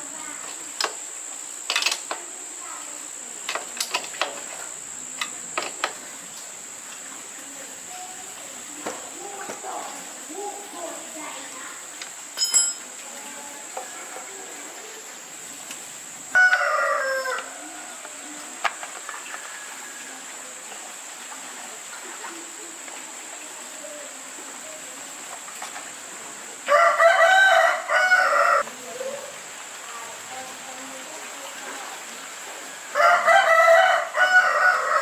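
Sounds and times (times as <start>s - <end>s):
rooster crowing: 16.3s - 18.4s, 19.2s - 20.3s, 26.6s - 28.7s, 32.8s - 35.0s.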